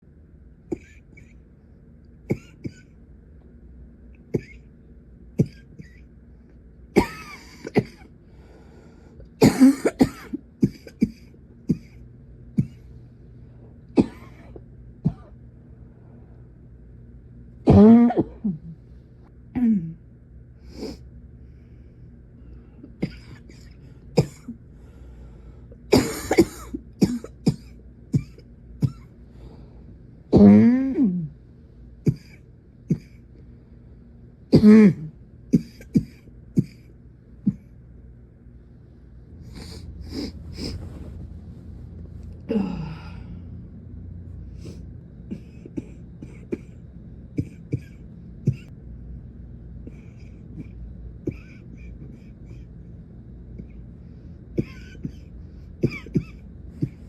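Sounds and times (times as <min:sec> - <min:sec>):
throat clearing: 0:00.7 - 0:01.4, 0:12.6 - 0:12.9, 0:17.7 - 0:18.8, 0:30.3 - 0:31.3, 0:34.6 - 0:37.7, 0:54.6 - 0:57.0
woman coughing: 0:02.3 - 0:02.9, 0:04.3 - 0:04.6, 0:05.4 - 0:06.0, 0:07.0 - 0:08.1, 0:09.4 - 0:12.0, 0:12.6 - 0:12.8, 0:14.0 - 0:15.3, 0:17.7 - 0:18.7, 0:23.0 - 0:24.5, 0:25.9 - 0:29.1, 0:30.3 - 0:31.3, 0:32.1 - 0:33.2, 0:34.5 - 0:36.9, 0:45.3 - 0:46.8, 0:47.4 - 0:48.7, 0:50.6 - 0:52.6, 0:54.6 - 0:57.0.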